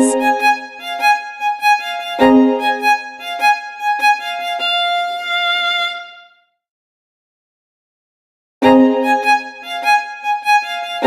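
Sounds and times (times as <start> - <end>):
instrumental music sustained notes: 0.0 - 5.8.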